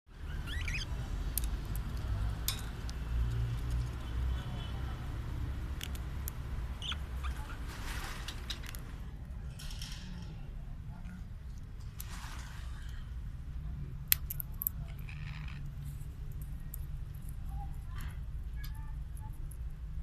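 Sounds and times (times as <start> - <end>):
faint bird chirp: 0.1 - 1.0, 6.8 - 7.6
parakeet cracking seed with beak: 5.7 - 6.4, 14.1 - 15.6.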